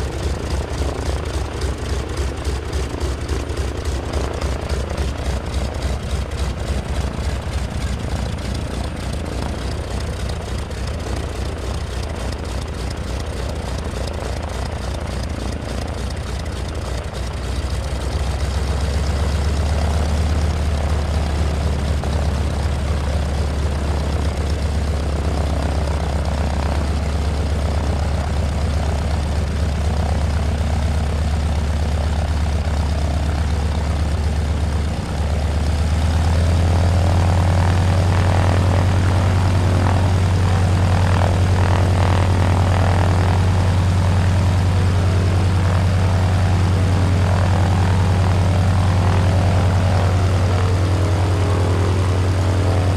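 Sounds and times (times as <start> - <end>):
radial aircraft engine and propeller: 0.0 - 52.9.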